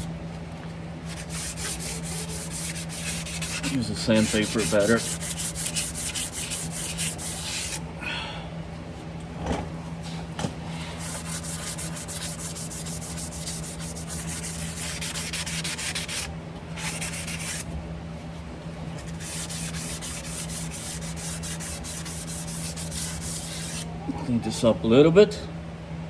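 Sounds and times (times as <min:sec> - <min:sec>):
steady low hum: 0:00.0 - 0:26.0
sandpaper rubbing on metal: 0:01.1 - 0:07.8, 0:11.0 - 0:17.6, 0:19.0 - 0:23.9.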